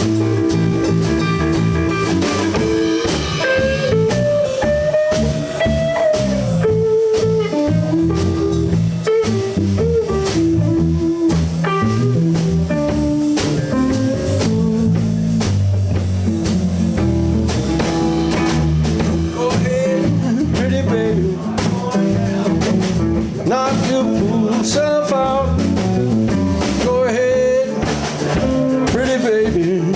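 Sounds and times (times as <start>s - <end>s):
electric guitar lead with bends: 0.0s - 20.7s
blues band playing: 0.0s - 29.9s.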